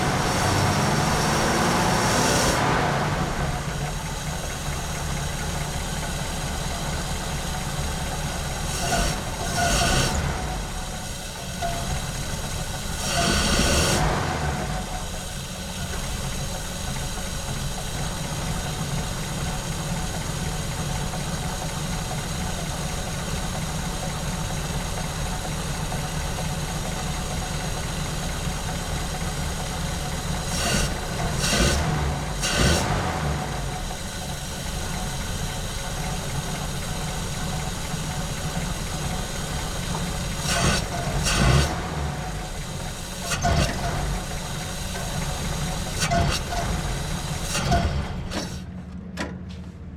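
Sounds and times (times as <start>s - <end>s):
engine revving bursts: 0.0s - 3.8s, 8.7s - 10.7s, 12.7s - 14.9s, 30.4s - 34.9s, 38.5s - 48.7s
car engine idling: 0.0s - 49.9s.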